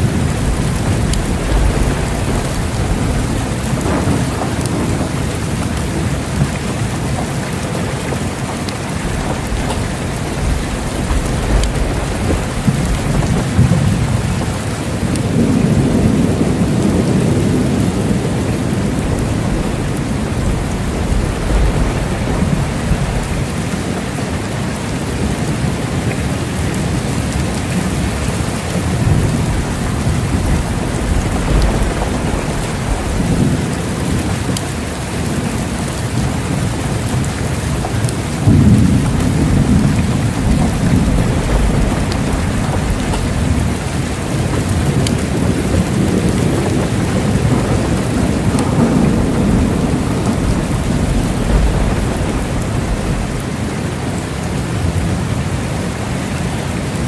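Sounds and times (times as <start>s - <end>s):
rolling thunder: 0.0s - 56.1s
heavy rain: 0.0s - 57.0s.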